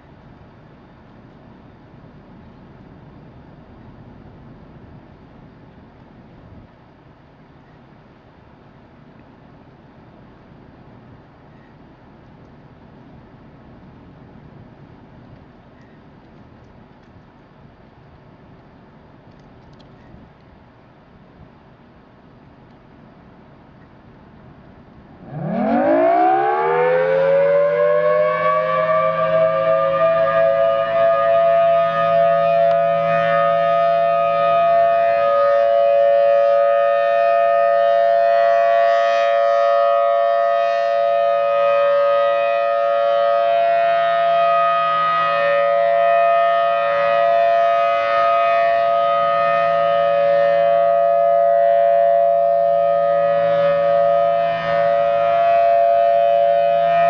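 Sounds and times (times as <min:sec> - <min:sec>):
tornado siren wailing: 0:25.0 - 0:57.0.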